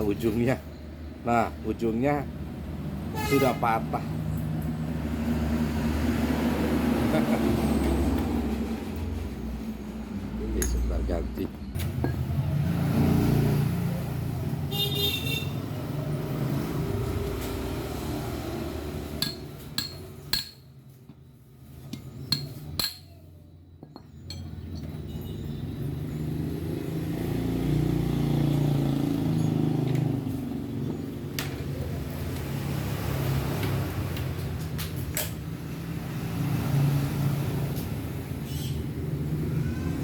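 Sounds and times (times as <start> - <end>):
metal tools clinking on engine: 10.5 - 12.2, 19.2 - 20.8, 23.8 - 25.4, 29.2 - 30.2.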